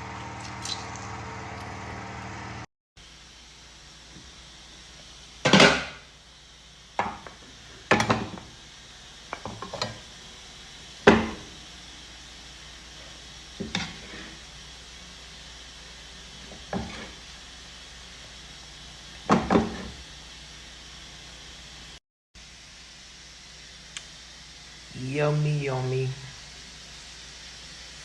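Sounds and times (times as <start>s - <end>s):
kitchen utensils and dishes clattering: 5.4s - 6.0s.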